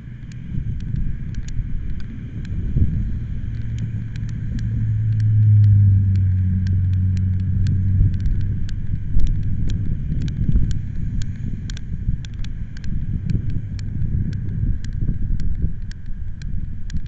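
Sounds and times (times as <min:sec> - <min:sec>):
faint ticks: 0:00.0 - 0:17.0
low hum: 0:00.0 - 0:17.0
wind buffeting microphone: 0:00.0 - 0:17.0.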